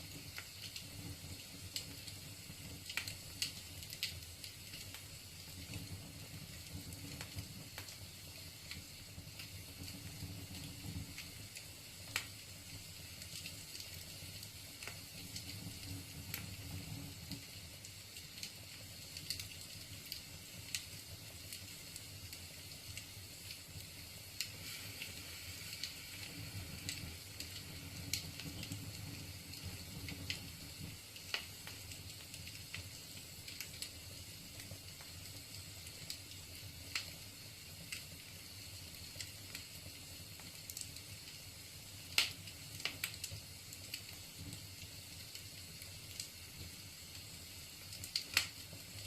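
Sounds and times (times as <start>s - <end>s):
flames rumbling and hissing: 0.0s - 49.0s
wood fire crackling and popping: 0.0s - 49.0s.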